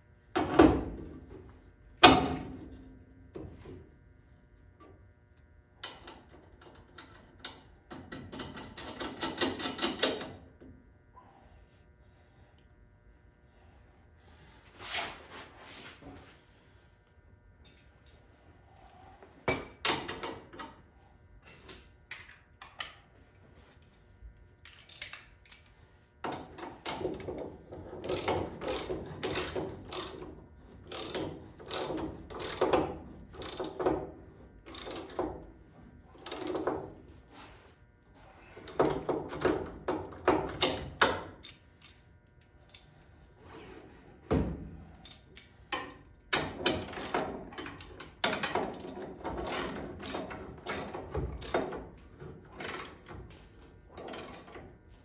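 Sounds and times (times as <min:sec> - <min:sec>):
ratchet wrench clicking: 0:28.1 - 0:30.2, 0:30.9 - 0:32.8, 0:33.4 - 0:33.8, 0:34.7 - 0:35.2, 0:36.2 - 0:36.7, 0:46.8 - 0:51.6.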